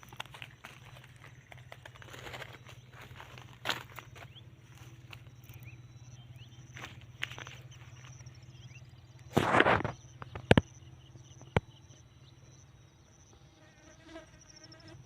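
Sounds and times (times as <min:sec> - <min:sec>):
faint steady hum: 0:00.0 - 0:15.0
high insect-like chirping: 0:00.0 - 0:15.0.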